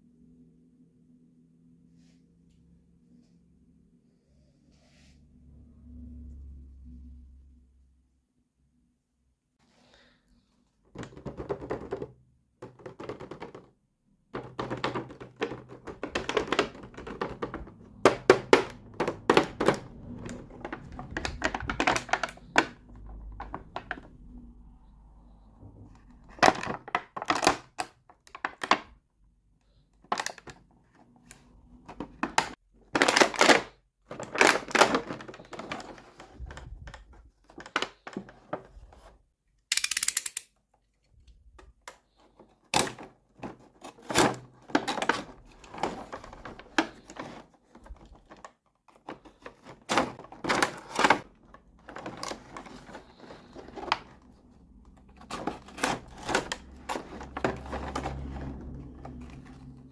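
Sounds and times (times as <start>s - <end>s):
plastic toy pieces clicking: 39.7s - 40.6s.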